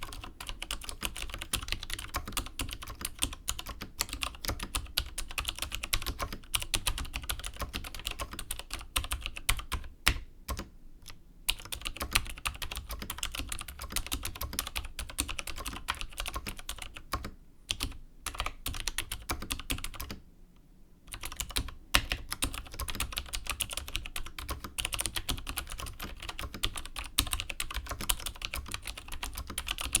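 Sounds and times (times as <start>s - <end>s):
keyboard typing clicks: 21.1s - 30.0s.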